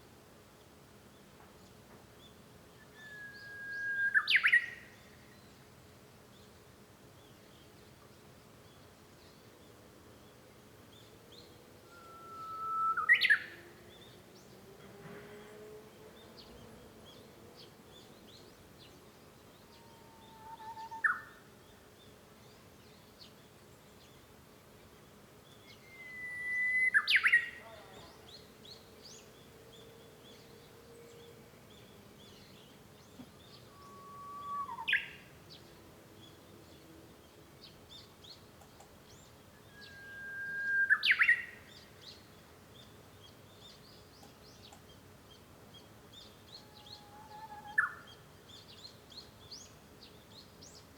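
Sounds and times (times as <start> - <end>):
bush warbler song: 0.0 - 50.9
faint high bird chirps: 2.8 - 5.6, 11.0 - 14.5, 17.9 - 21.8, 25.5 - 36.4, 37.9 - 50.9.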